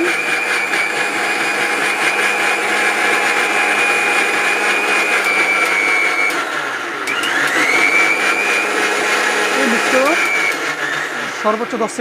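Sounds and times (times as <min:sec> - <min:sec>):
mixer grinder motor whining: 0:00.0 - 0:12.0.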